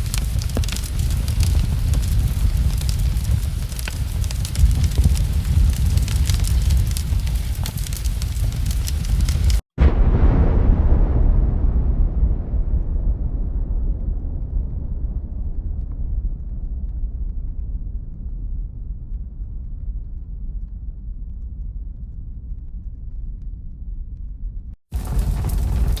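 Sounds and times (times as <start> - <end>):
deep steady rumble: 0.0 - 26.0.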